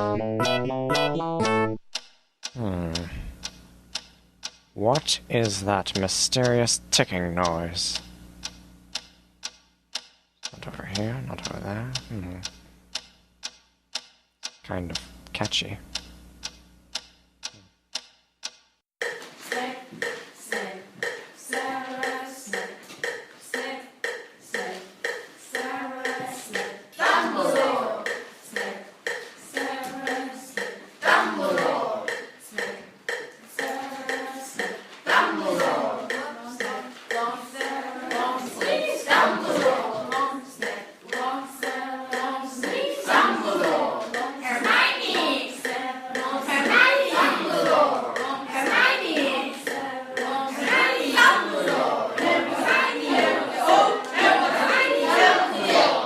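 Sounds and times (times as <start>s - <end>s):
voices singing and chanting: 2.6s - 3.3s, 19.4s - 56.0s
steady beat of claps: 19.0s - 56.0s.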